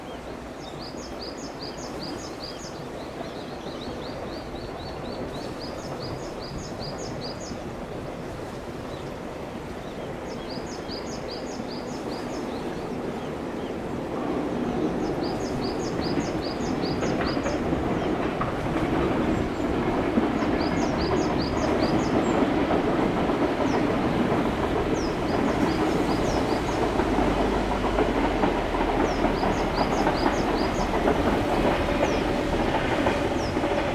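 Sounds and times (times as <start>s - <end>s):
electric train approaching: 13.4s - 33.9s.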